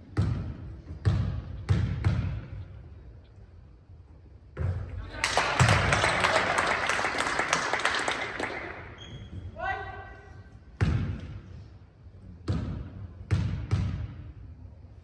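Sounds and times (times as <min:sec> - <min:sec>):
crowd clapping and cheering: 0:05.2 - 0:09.0.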